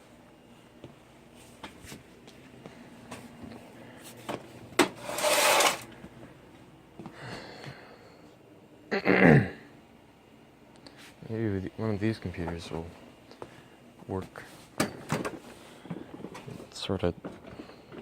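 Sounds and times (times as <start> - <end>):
loud scraping noise: 4.9 - 5.9.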